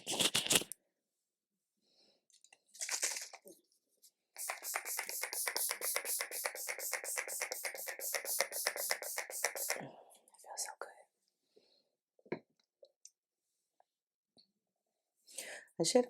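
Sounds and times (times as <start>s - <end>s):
spray bottle hissing: 4.4s - 9.8s.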